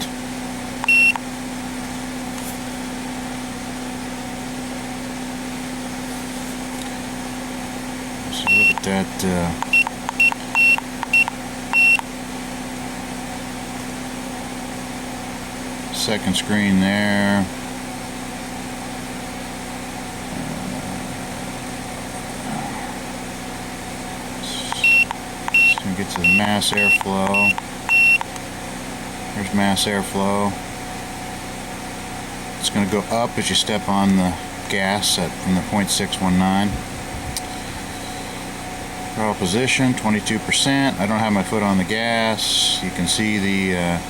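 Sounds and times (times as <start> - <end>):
car engine idling: 0.0 - 44.0
short high electronic beep: 24.7 - 28.2.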